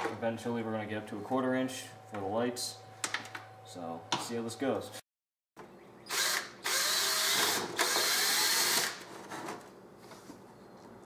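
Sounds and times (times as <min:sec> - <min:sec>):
power drill drilling into plastic: 0:06.1 - 0:09.0.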